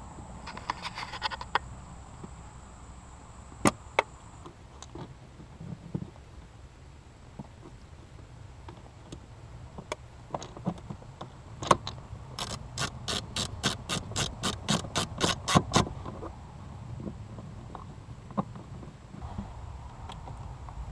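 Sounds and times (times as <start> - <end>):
sharp mechanical clicks: 12.4 - 15.9.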